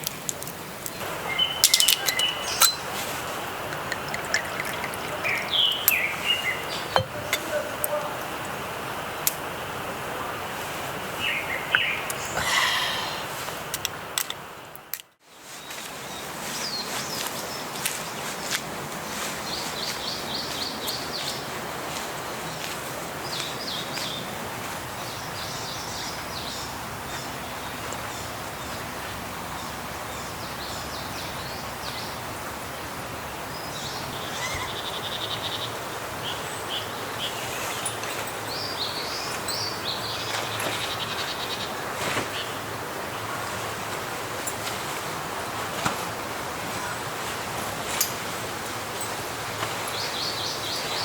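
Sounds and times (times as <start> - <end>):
wind rushing in trees: 0.0 - 51.0
small birds chirping and trilling: 0.8 - 8.6, 11.2 - 13.3, 19.1 - 24.3, 33.2 - 42.7, 46.8 - 51.0.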